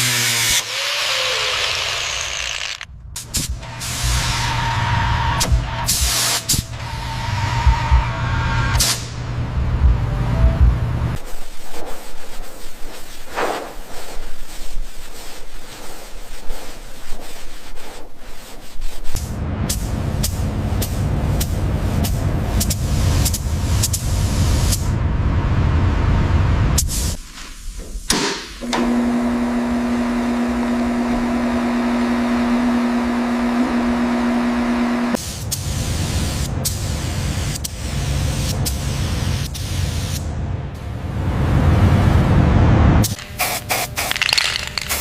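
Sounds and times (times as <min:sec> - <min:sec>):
motor running with whir: 0:00.0 - 0:02.9.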